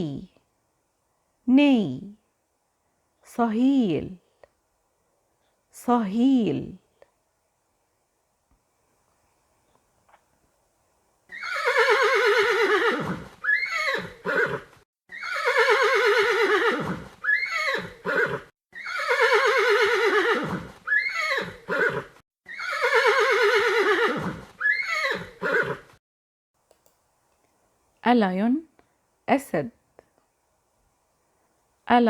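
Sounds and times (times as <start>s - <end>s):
horse neighing: 11.3s - 25.9s.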